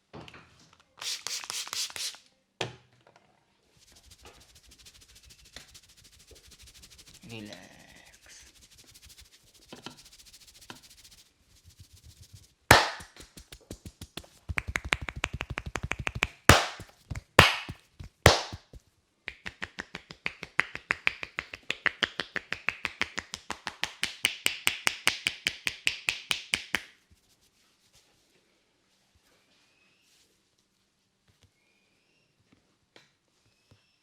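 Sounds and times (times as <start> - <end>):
hands tapping on head: 12.7 - 26.9.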